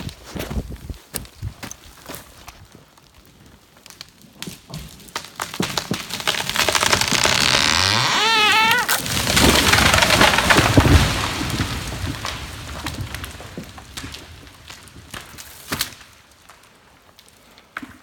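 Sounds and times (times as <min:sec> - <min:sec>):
wood cracking and splintering: 0:01.1 - 0:17.4
tree crashing to ground: 0:04.6 - 0:16.0
wavering wood creak: 0:06.3 - 0:09.2.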